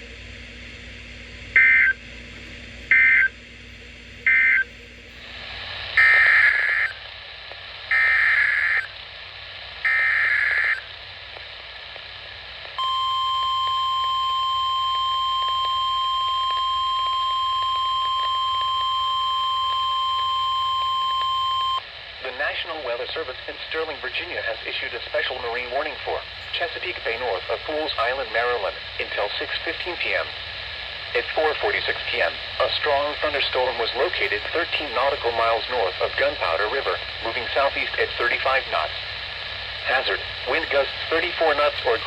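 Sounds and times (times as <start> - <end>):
steady warning alarm tone: 1.6 - 2.0, 2.9 - 3.4, 4.2 - 4.8, 6.0 - 7.0, 7.9 - 8.9, 9.8 - 10.8, 12.8 - 21.8.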